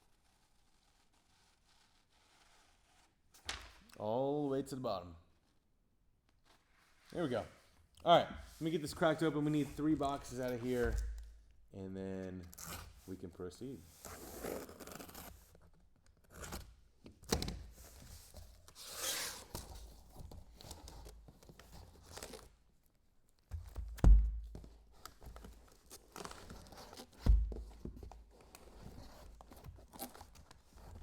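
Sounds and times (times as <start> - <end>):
heavy thumps: 9.8 - 11.4, 23.8 - 24.7, 27.3 - 27.8.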